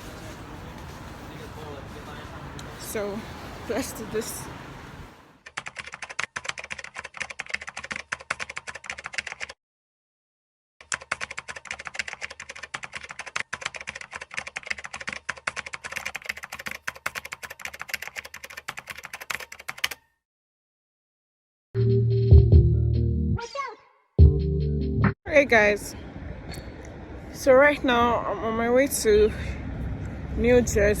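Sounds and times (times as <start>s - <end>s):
rapid key clicking: 10.8s - 20.0s.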